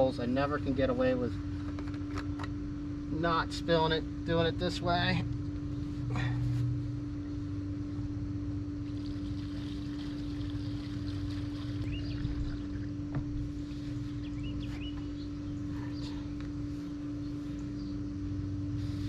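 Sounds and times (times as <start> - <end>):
steady mechanical hum: 0.0 - 19.0
diesel pouring through funnel: 8.8 - 14.3.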